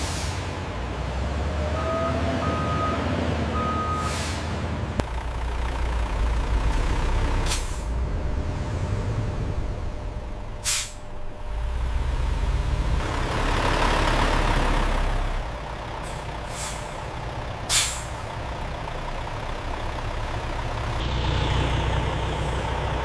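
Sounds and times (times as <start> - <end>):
truck engine rumbling: 0.0 - 23.0
air brake hisses: 4.0 - 4.5, 10.6 - 11.0, 16.1 - 17.0, 17.7 - 18.2.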